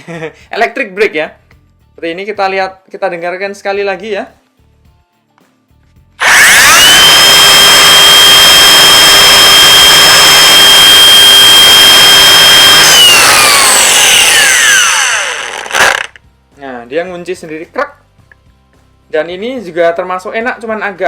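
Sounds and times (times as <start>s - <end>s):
angle grinder whining: 6.2s - 16.2s
grinder winding down: 6.2s - 16.2s.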